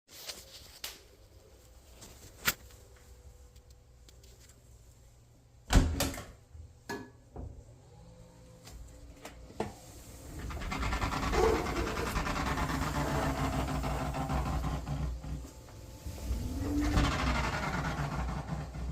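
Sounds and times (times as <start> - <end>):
clothes dryer running: 7.3 - 18.9.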